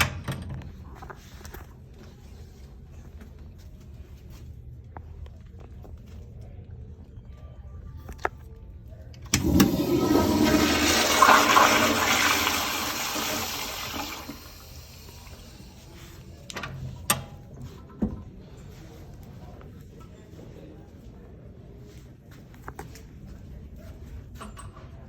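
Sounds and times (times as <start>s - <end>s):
toilet flushing: 9.3s - 16.0s.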